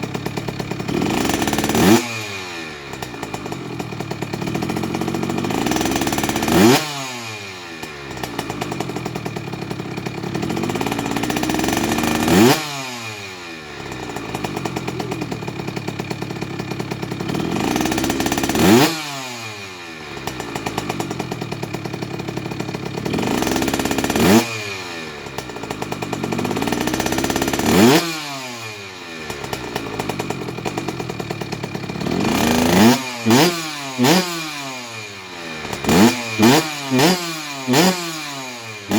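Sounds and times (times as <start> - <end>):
two-stroke engine revving: 0.0 - 38.9.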